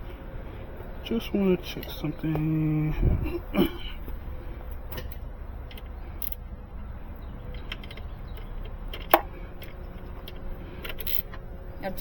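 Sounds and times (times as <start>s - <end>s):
low steady rumble: 0.0s - 12.0s
mechanical clicks from tools: 4.9s - 6.4s, 7.5s - 11.4s.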